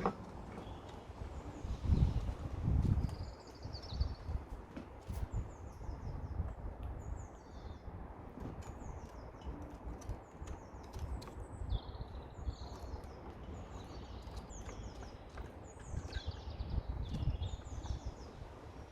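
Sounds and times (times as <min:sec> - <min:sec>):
songbird chirping: 0:00.0 - 0:18.9.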